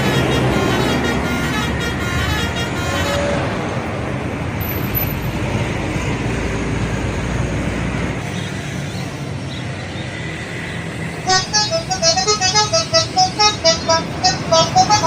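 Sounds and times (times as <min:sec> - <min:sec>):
bus horn trumpets: 0:00.0 - 0:03.8, 0:11.2 - 0:15.0
engine and road noise: 0:00.0 - 0:15.0.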